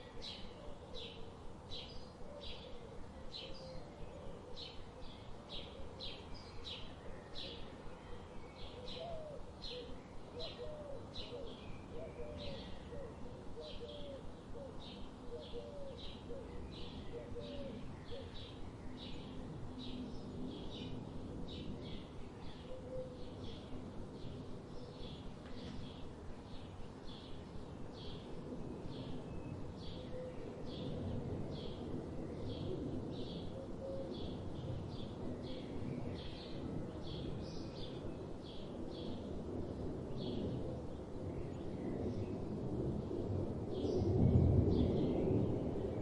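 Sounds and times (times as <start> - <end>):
bird cooing: 0.0 - 1.4, 2.2 - 18.5, 22.5 - 23.7, 29.8 - 30.9, 32.5 - 34.4.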